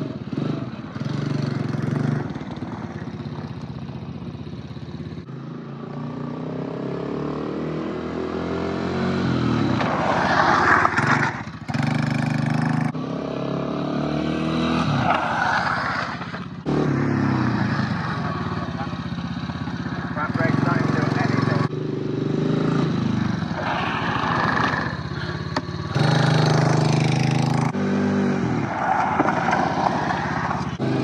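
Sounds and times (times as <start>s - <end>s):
quad bike engine revving: 0.0s - 2.7s, 10.9s - 15.0s, 16.6s - 28.6s, 30.8s - 31.0s.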